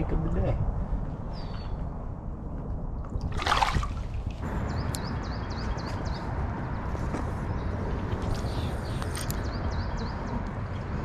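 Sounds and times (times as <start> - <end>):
water splash: 3.2 - 4.4
river water sloshing: 3.2 - 4.5.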